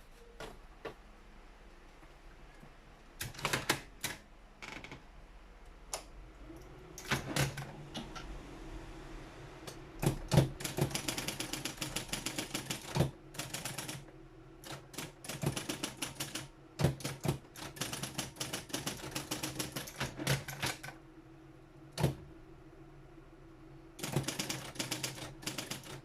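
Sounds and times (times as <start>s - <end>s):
typewriter motor hum: 9.7s - 20.9s, 24.0s - 26.0s.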